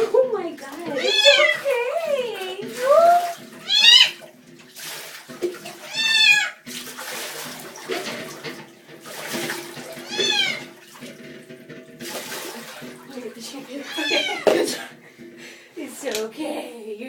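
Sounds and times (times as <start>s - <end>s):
running water: 0.0s - 17.0s
cat yowling: 0.9s - 1.7s, 2.9s - 4.2s, 5.8s - 6.6s, 10.0s - 10.7s, 13.8s - 14.5s.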